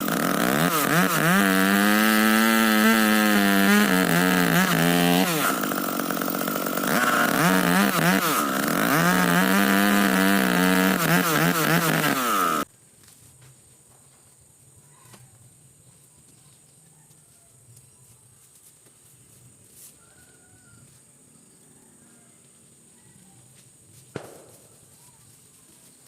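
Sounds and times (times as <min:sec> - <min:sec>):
chainsaw revving: 0:00.0 - 0:12.7.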